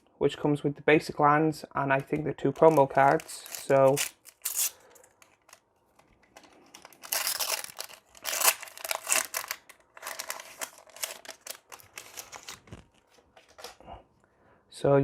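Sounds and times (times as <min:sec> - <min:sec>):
packaging crinkling and tearing: 0:02.5 - 0:13.8.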